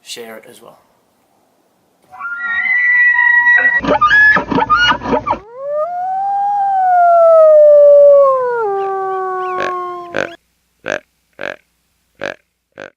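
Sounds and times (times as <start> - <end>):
dog howling: 4.8 - 10.4.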